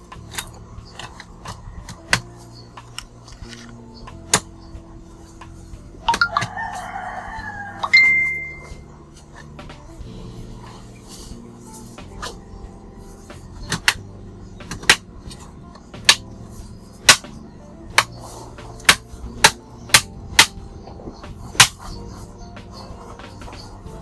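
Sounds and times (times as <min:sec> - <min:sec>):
faint background music: 0:00.0 - 0:24.0.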